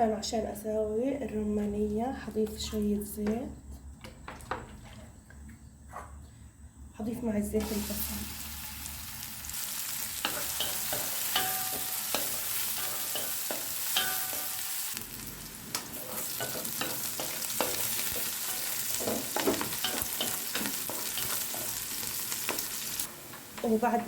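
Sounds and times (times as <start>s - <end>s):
onion sizzling in oil: 7.6s - 24.0s
utensil knocking and scraping pan: 10.2s - 14.6s, 16.0s - 21.8s.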